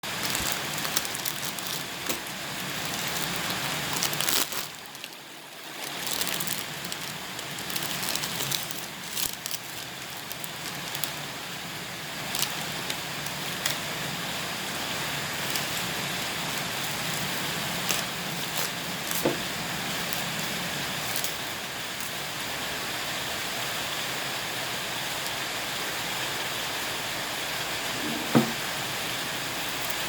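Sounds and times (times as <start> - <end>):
meat grinder crunching noodles: 0.0 - 22.3.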